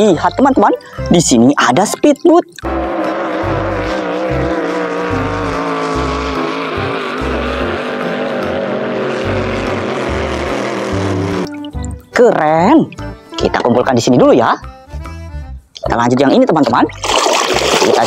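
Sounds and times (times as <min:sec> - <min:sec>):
speedboat engine running: 0:02.6 - 0:11.8.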